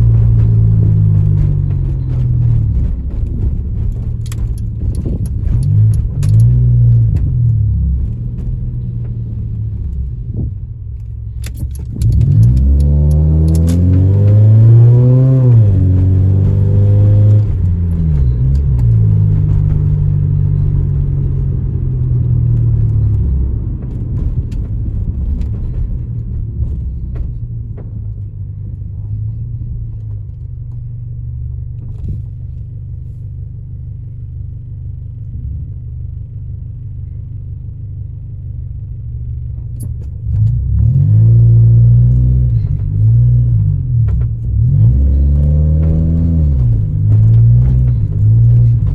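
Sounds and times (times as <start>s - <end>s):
car engine misfiring: 0.0s - 33.2s.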